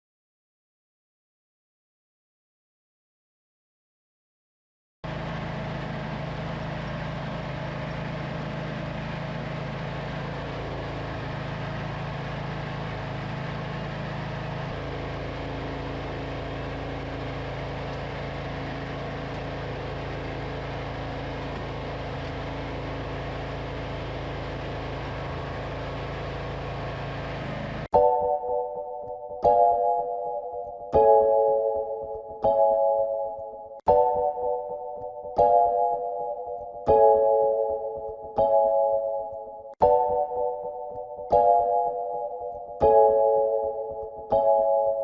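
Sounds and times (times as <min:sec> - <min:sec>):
riding lawn mower engine running: 0:05.0 - 0:32.3.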